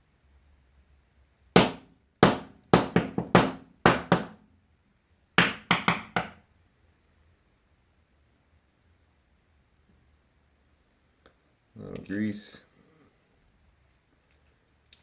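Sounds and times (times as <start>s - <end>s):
sharp knocks on metal parts: 1.6s - 4.4s, 5.4s - 6.4s.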